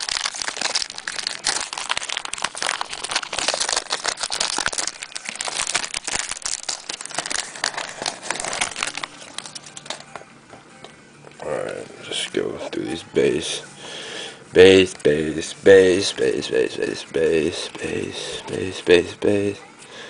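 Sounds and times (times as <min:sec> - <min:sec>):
wrapper tearing and crinkling: 0:00.0 - 0:10.1.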